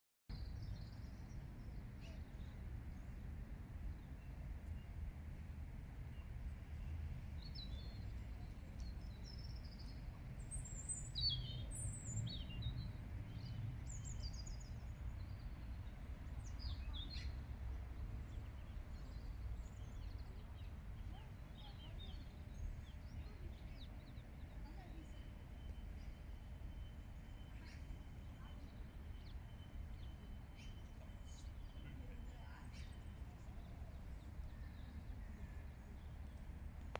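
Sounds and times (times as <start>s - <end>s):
small birds chirping: 7.4s - 36.9s.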